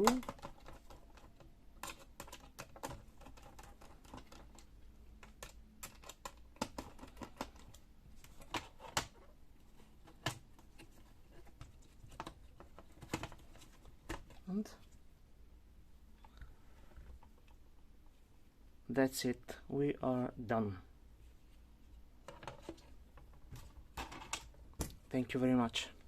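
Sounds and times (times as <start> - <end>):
plastic laptop parts handled: 0.0 - 14.4, 22.2 - 25.0.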